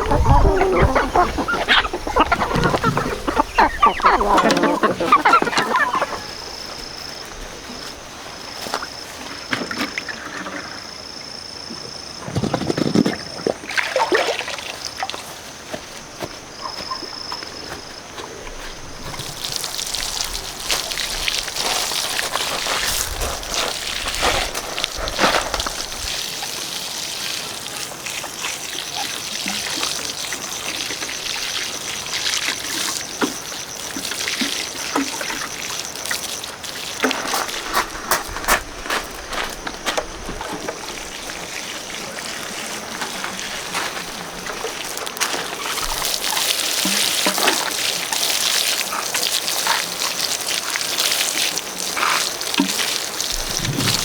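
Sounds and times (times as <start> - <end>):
poultry clucking: 0.0 - 8.0
steady rushing hiss: 53.0 - 54.0.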